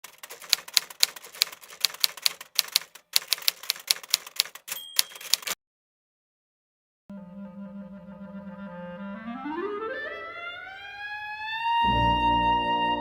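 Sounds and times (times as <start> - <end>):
typewriter keys clacking: 0.0 - 5.6
typewriter bell ring: 3.2 - 5.6.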